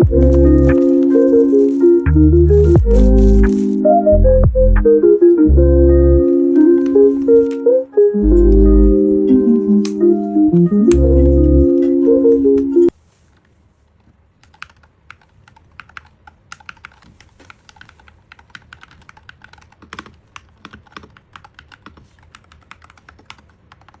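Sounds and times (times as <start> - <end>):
mechanical keyboard typing: 14.4 - 24.0.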